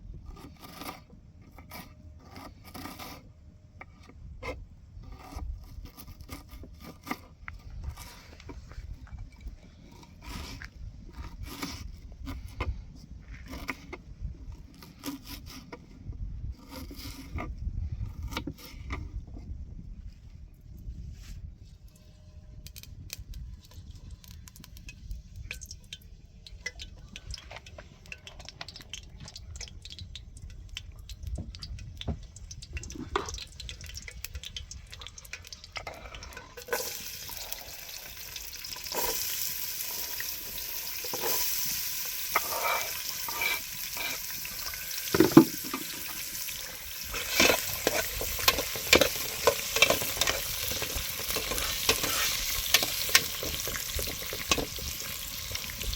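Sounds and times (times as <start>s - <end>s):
utensil stirring and knocking: 26.5s - 55.9s
food sizzling in a pot: 36.4s - 55.9s.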